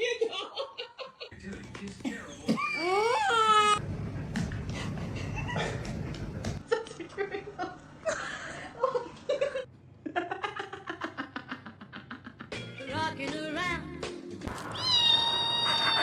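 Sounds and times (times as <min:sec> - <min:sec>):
music: 0:12.5 - 0:14.8.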